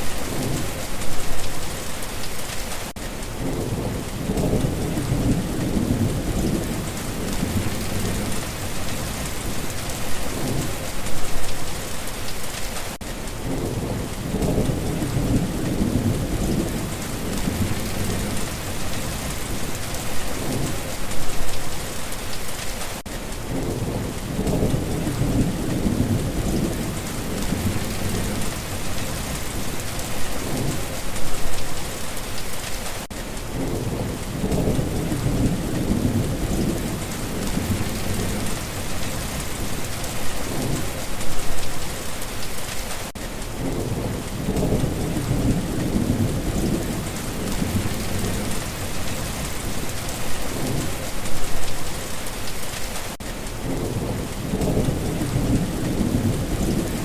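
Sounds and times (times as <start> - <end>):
steady rain falling: 0.0 - 57.0
low rolling thunder: 3.4 - 11.4, 13.4 - 21.1, 23.4 - 31.6, 33.5 - 41.6, 43.6 - 51.7, 53.6 - 57.0.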